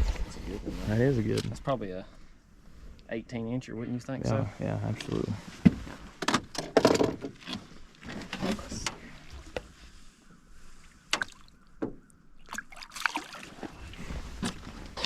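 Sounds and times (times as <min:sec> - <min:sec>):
knocks and bumps in boat: 0:05.6 - 0:07.5.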